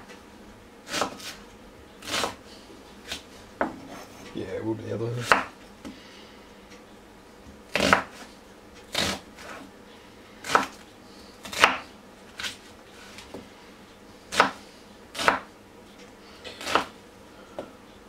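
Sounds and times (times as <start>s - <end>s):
knife chopping onion on board: 0.9s - 1.4s, 2.0s - 2.4s, 5.2s - 5.6s, 7.7s - 8.3s, 8.9s - 9.6s, 10.4s - 10.8s, 11.4s - 12.6s, 14.3s - 15.5s, 16.6s - 17.0s.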